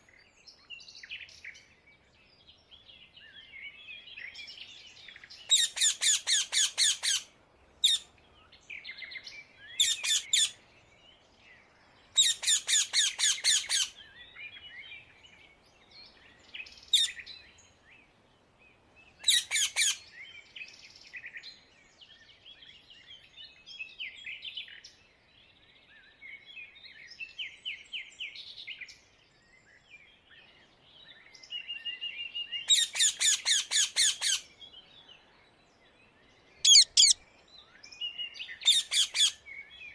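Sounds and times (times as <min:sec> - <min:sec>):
parakeets screeching: 0:19.3 - 0:20.0, 0:36.7 - 0:37.2
parakeets chattering: 0:36.7 - 0:37.2.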